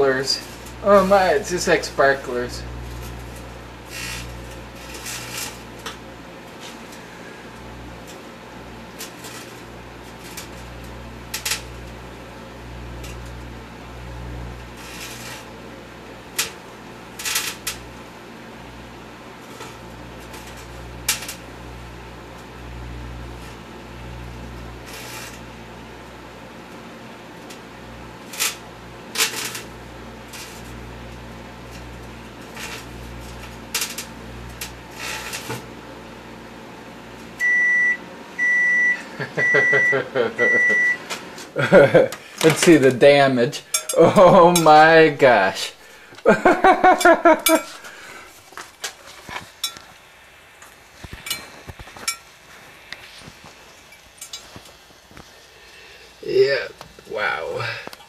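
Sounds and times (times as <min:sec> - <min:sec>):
crackling snaps of electric arcing: 0:00.0 - 0:37.4, 0:39.0 - 0:58.0
microwave oven humming: 0:00.0 - 0:58.0
microwave beep: 0:37.4 - 0:41.1.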